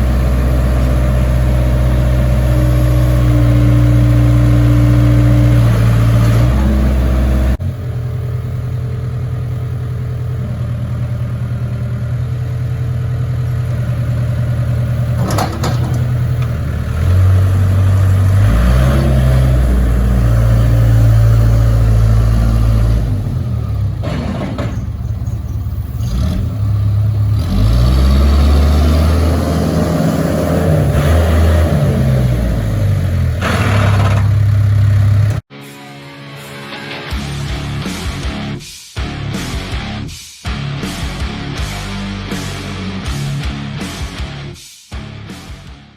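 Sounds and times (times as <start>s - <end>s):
backhoe diesel engine: 0.0s - 35.5s.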